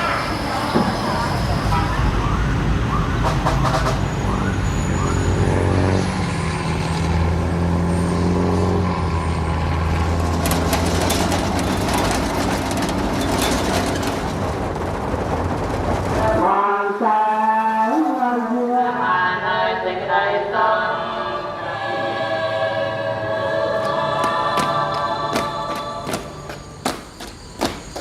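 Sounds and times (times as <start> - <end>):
voices: 0.0 - 5.4
vehicle engine humming: 0.0 - 16.8, 22.5 - 28.0
traffic: 0.0 - 28.0
chanting: 16.3 - 26.8.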